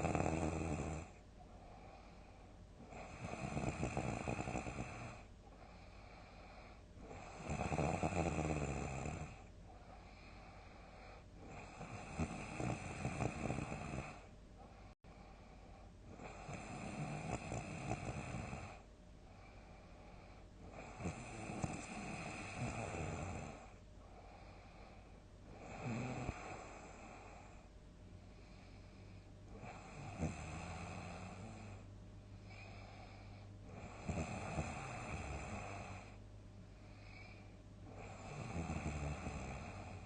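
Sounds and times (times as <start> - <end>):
person snoring loudly: 0.0 - 1.2, 2.9 - 5.2, 7.0 - 9.4, 11.4 - 14.3, 16.2 - 18.8, 20.7 - 23.7, 25.5 - 27.1, 29.6 - 31.8, 33.7 - 36.1, 37.9 - 40.0.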